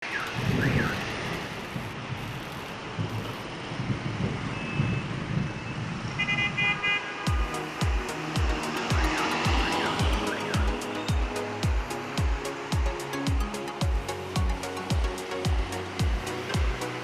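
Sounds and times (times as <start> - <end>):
street traffic rumbling: 0.0 - 17.0
car horn toots: 6.2 - 7.5
kick-drum beat music: 7.3 - 17.0.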